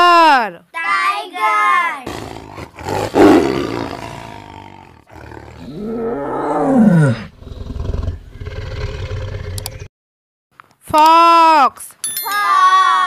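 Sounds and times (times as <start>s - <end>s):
tiger growling: 2.0s - 9.9s
tiger roaring: 2.0s - 9.9s.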